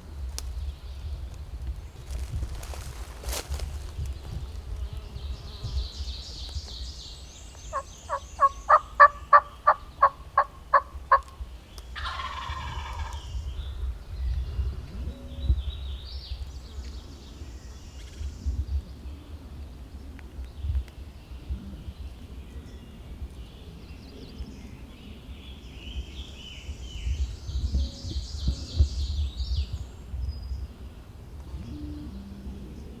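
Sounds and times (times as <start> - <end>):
songbird chirps: 0.0 - 33.0
turkey yelps: 7.7 - 11.2
turkey gobbling: 7.7 - 11.3, 12.0 - 13.2.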